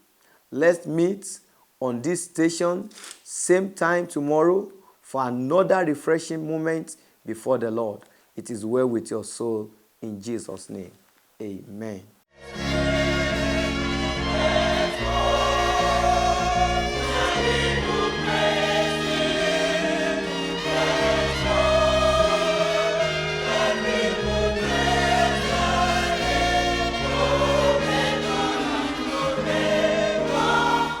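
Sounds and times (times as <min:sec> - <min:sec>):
gospel choir singing: 0:12.4 - 0:31.0
instrumental backing with bass: 0:12.4 - 0:31.0.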